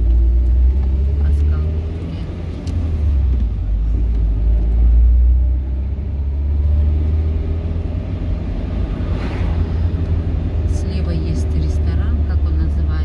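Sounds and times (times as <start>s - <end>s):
car engine rumble: 0.0s - 13.0s
tyres on road: 0.0s - 13.0s.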